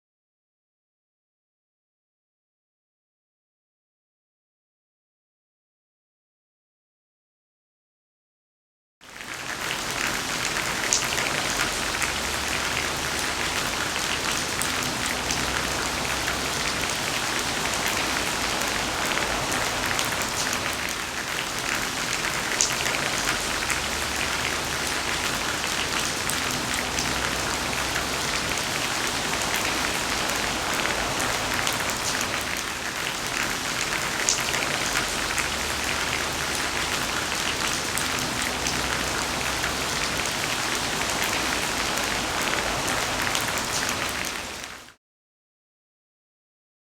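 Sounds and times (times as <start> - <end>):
steady rain falling: 9.0 - 45.0.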